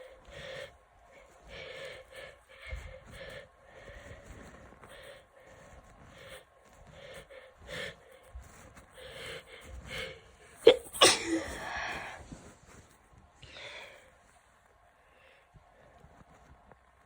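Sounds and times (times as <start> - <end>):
person hitching breaths: 0.0 - 14.4
person sneezing: 10.6 - 12.2.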